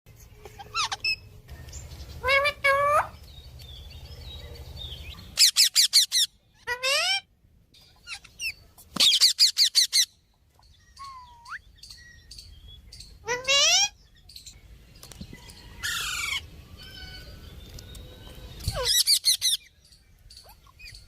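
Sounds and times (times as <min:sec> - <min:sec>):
parrot high chirps: 0:00.4 - 0:01.3, 0:02.2 - 0:03.2, 0:05.2 - 0:07.3, 0:07.9 - 0:10.2, 0:10.9 - 0:12.0, 0:13.0 - 0:14.0, 0:18.6 - 0:19.7
parrot squawking: 0:00.4 - 0:01.3, 0:02.2 - 0:03.2, 0:05.4 - 0:07.3, 0:08.0 - 0:10.1, 0:13.2 - 0:14.0.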